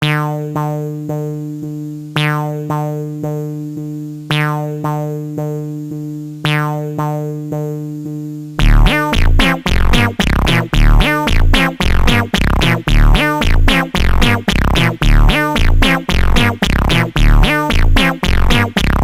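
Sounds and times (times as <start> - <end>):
loud beat with heavy bass: 8.6 - 19.0
synthesizer phrase: 8.6 - 19.0.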